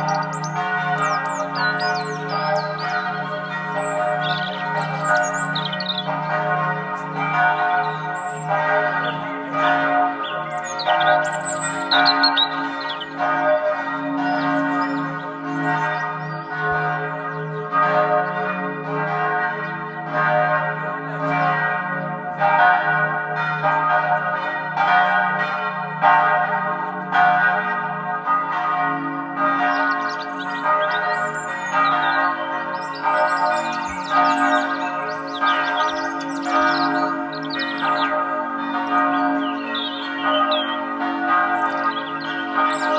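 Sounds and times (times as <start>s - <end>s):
birds chirping: 0.0s - 16.8s, 29.6s - 42.9s
bells ringing: 0.0s - 42.9s.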